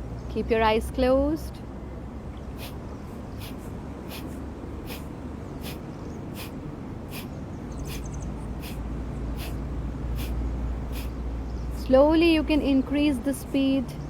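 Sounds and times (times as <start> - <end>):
steady low rumble: 0.0 - 14.0
forceful nasal exhalations: 2.6 - 11.2.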